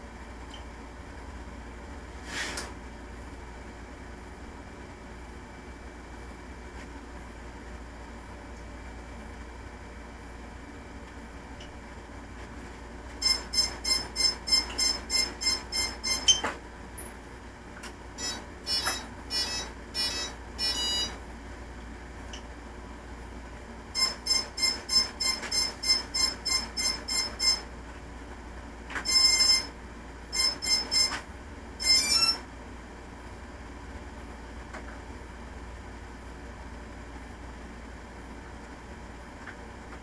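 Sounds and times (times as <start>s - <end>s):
quadcopter electronic beeps: 13.2s - 16.4s, 18.2s - 21.2s, 24.0s - 27.6s, 29.1s - 29.7s, 30.4s - 31.1s, 31.8s - 32.4s.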